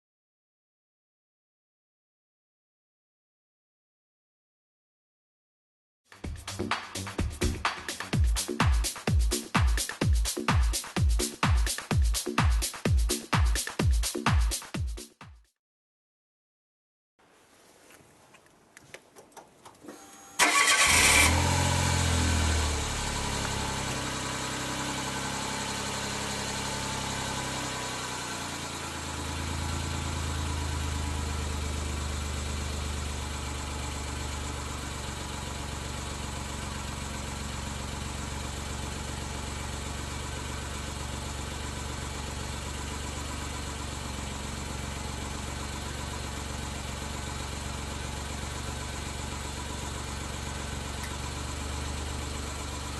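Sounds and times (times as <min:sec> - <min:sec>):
faint clicks: 0:17.9 - 0:20.0
car engine starting and idling: 0:19.2 - 0:52.9.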